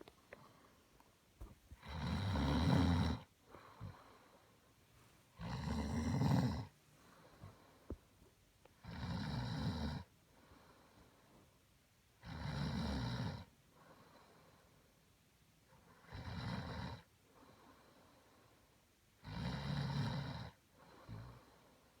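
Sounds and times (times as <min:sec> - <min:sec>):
person snoring: 0:01.8 - 0:04.0, 0:05.4 - 0:06.7.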